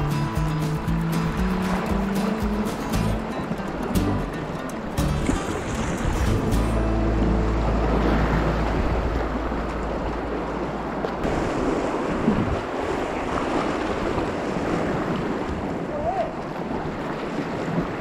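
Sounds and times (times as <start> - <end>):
rushing whitewater: 0.0 - 18.0
heavy low rumble: 5.0 - 11.3.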